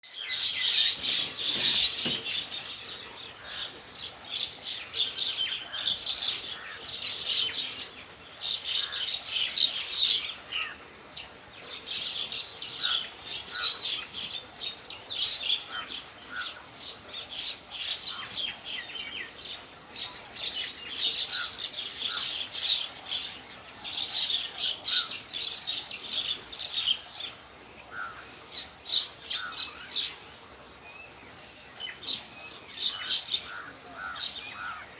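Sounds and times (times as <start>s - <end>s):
small birds chirping: 0.1s - 6.7s.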